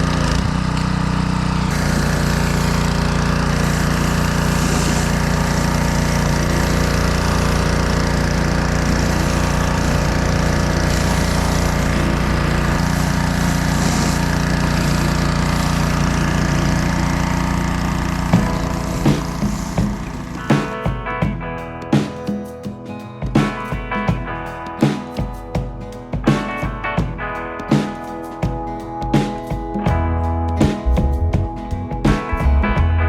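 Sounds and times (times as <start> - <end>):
pressure washer engine running: 0.0 - 20.9
high-pressure water spray hiss: 1.7 - 20.5.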